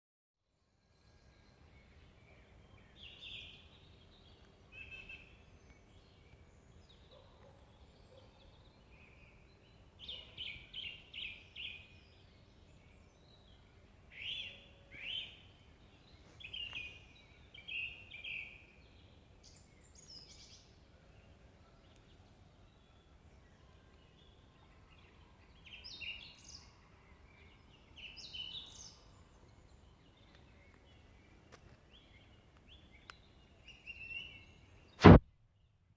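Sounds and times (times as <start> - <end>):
songbirds chirping: 0.5 - 35.9.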